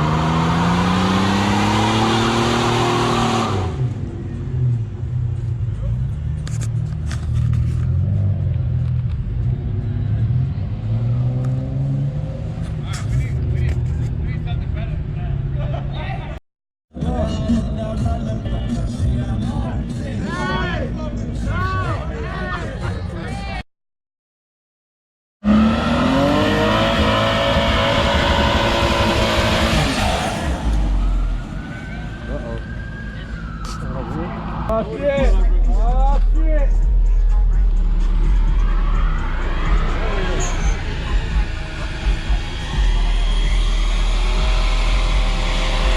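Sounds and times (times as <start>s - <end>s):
car engine droning: 0.0s - 15.6s, 25.4s - 45.9s.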